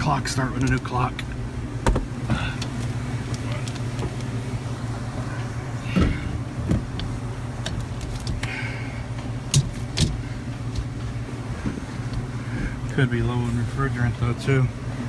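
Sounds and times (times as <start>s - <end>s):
low mechanical hum: 0.0s - 15.0s
sharp clicks and knocks: 9.5s - 11.0s.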